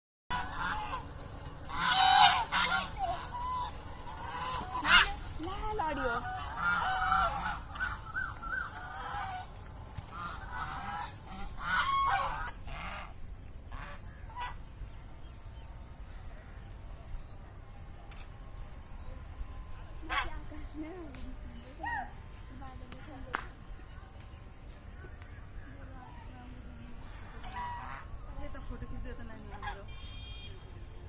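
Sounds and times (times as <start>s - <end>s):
ducks quacking: 0.3s - 14.9s, 19.9s - 20.7s, 27.0s - 28.2s, 29.4s - 30.5s.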